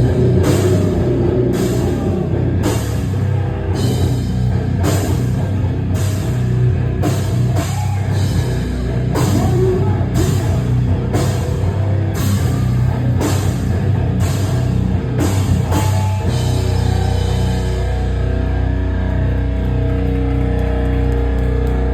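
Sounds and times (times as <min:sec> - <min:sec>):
pounding drum kit: 0:00.0 - 0:20.4
heavy rock band playing: 0:00.0 - 0:21.9.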